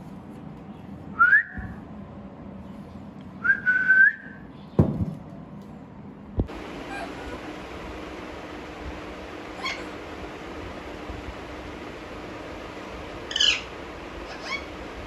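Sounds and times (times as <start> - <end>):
short clear whistles: 3.4 - 4.5.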